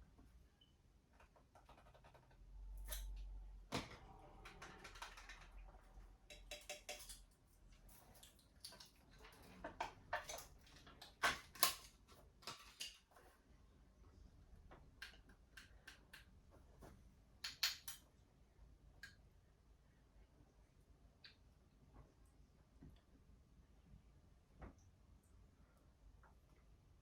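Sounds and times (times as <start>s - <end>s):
spoon scraping and tapping jar: 6.3s - 7.3s.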